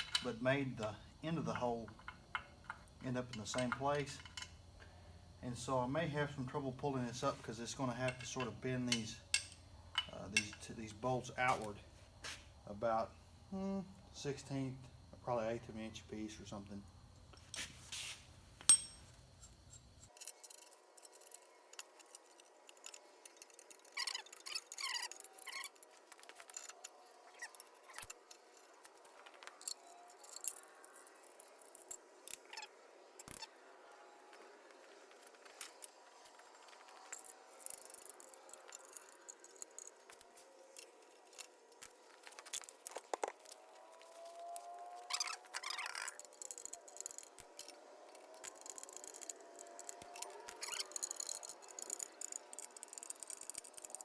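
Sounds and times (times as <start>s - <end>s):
hand tools clinking on metal: 0.0s - 0.4s, 1.3s - 4.6s, 6.4s - 11.7s, 18.7s - 19.6s.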